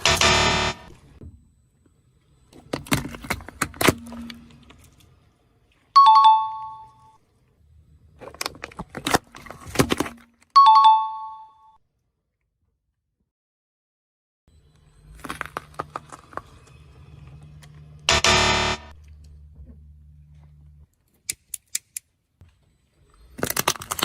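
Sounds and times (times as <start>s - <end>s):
objects crushed under car tyre: 15.1s - 16.6s.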